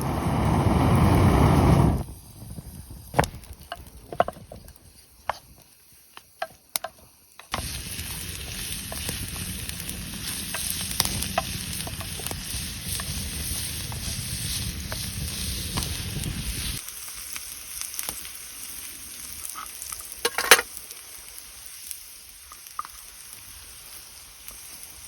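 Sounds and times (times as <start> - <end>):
food sizzling in a pan: 4.5 - 25.0.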